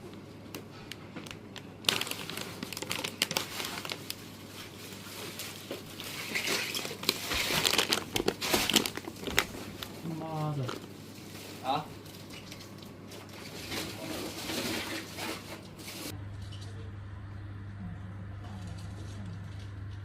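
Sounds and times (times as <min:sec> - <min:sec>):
packaging crinkling and rustling: 0:00.5 - 0:16.1
low hum: 0:16.1 - 0:20.0.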